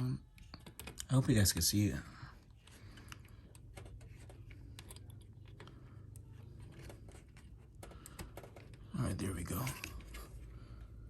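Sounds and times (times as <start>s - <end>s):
cable rustling: 2.4s - 11.0s.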